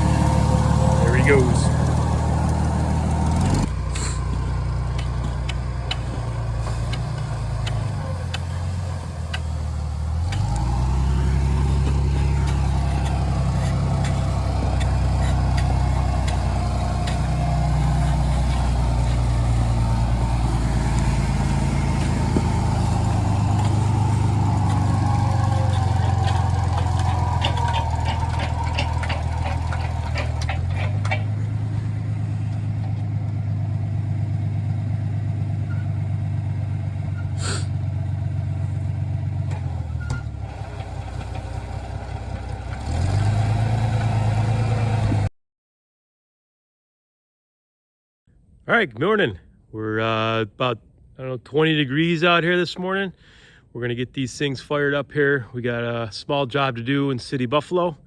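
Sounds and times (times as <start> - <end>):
auger engine running under load: 0.0 - 45.3
clicks and rattles: 22.0 - 31.7.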